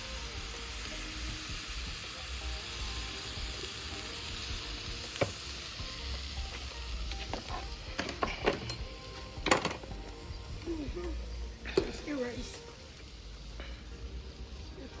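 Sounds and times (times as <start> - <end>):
chicken sizzling on a grill: 0.0 - 15.0
utensils clicking and knocking: 7.1 - 9.9.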